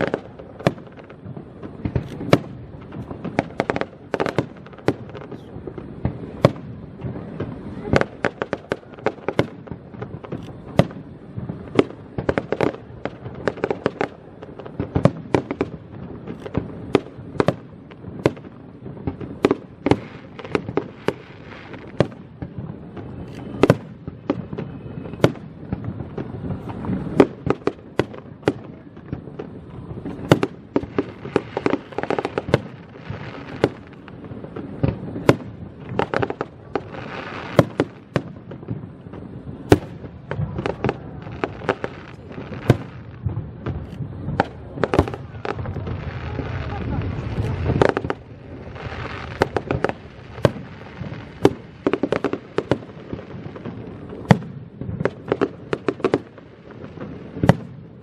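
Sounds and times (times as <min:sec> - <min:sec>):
fireworks bangs and cracks: 0:00.0 - 0:58.0
rumble of fireworks bursts: 0:00.0 - 0:58.0.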